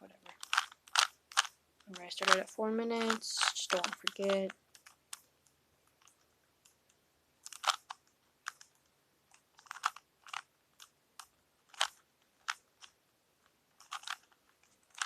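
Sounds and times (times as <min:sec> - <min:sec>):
puzzle cube clacking and clicking: 0:00.1 - 0:15.0.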